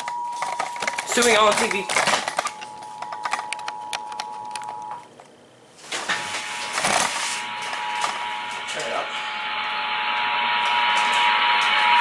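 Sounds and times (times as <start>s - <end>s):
clicks: 0.0s - 5.3s.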